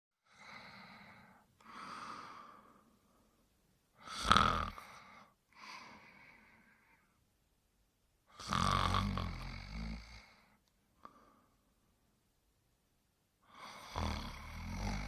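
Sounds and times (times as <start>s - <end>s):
cartoon dog snoring: 4.0s - 5.0s, 8.3s - 10.4s, 13.5s - 15.0s.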